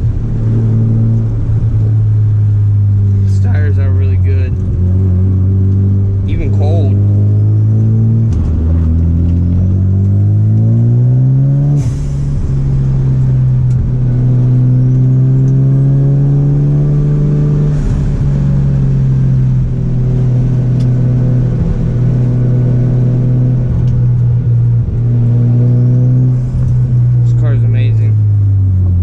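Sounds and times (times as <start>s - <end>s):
rotary engine accelerating: 0.0s - 29.0s.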